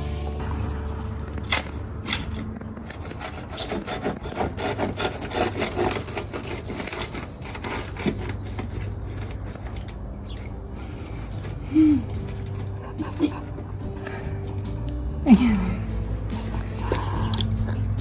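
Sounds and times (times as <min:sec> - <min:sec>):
knife scraping through caulk: 0:02.1 - 0:09.8.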